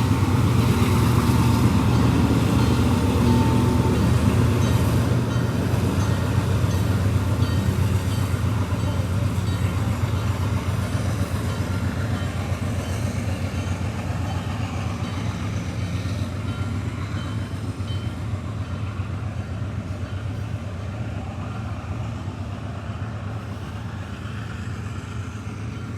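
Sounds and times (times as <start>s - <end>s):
crossing bell dinging: 0.0s - 18.8s
train wheels clacking on rails: 0.0s - 25.9s.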